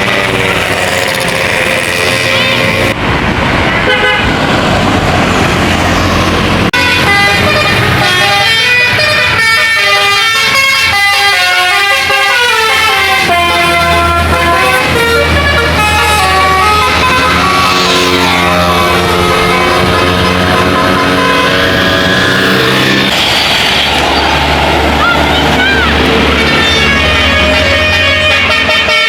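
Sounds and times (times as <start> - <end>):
bus engine hum: 0.0 - 29.0
musical air horns playing a tune: 6.7 - 23.1, 26.1 - 29.0.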